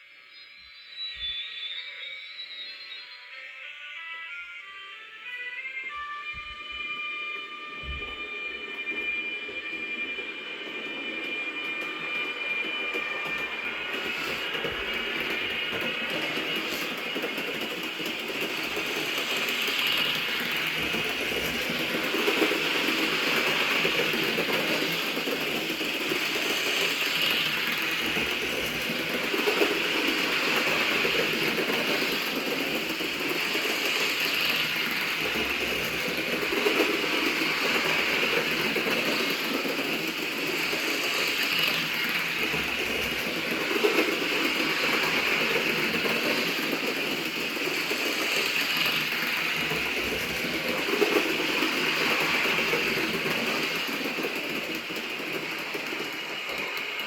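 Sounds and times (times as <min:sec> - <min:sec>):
model train motor whirring: 0:11.8 - 0:57.0.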